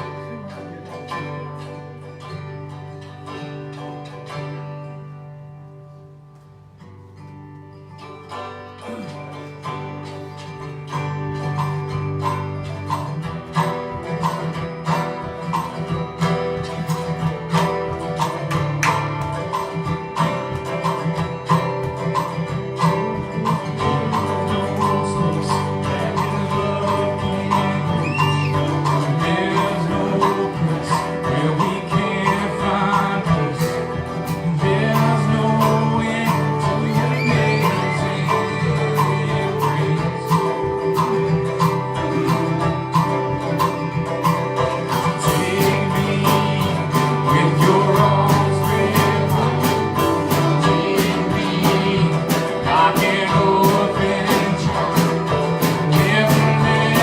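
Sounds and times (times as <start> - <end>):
strummed acoustic guitar: 0.0 - 57.0
people singing: 22.6 - 57.0.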